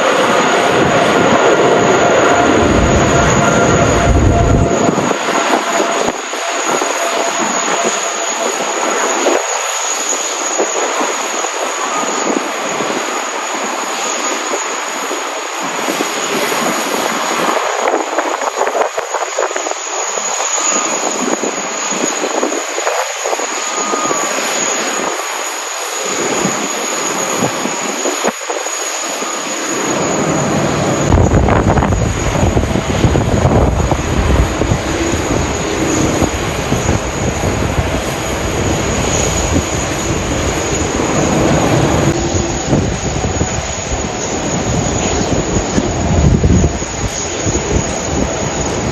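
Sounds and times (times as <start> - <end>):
deep rumble: 0.0 - 7.9, 29.9 - 48.9
jet engines running: 0.0 - 48.9.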